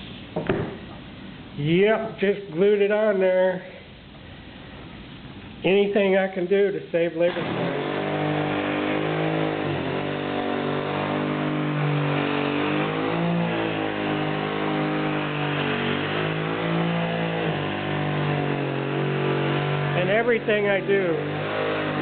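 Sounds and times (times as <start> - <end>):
pneumatic sander running: 7.3 - 22.0.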